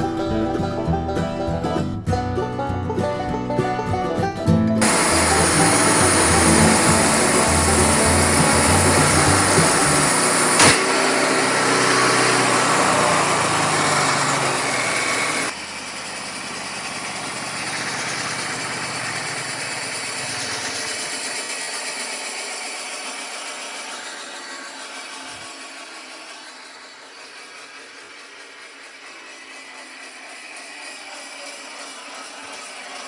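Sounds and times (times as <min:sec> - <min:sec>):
sharp crack: 0:04.8 - 0:15.5
portable bandsaw mill running: 0:04.8 - 0:33.0.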